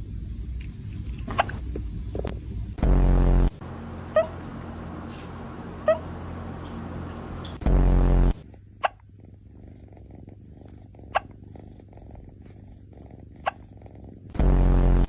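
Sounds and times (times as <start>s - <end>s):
cat purring: 3.9s - 15.0s
cat burping: 8.8s - 12.2s.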